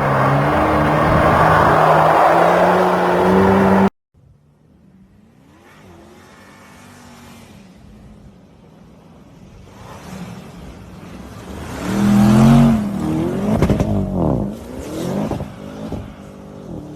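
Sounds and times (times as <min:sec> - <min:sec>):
distant car engine: 0:00.0 - 0:03.9.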